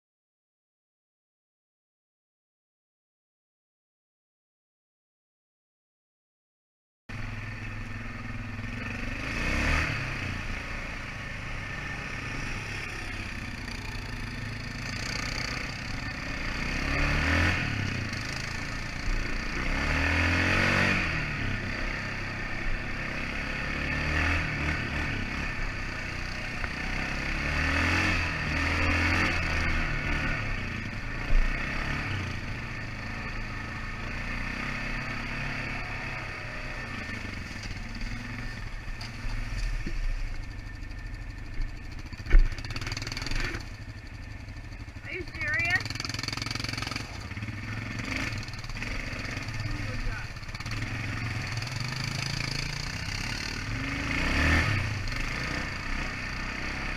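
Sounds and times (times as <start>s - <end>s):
atv engine revving: 7.1s - 56.9s.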